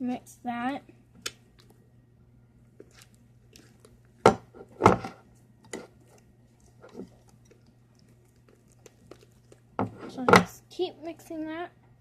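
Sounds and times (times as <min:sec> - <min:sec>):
utensil knocking and scraping bowl: 0:09.8 - 0:10.5.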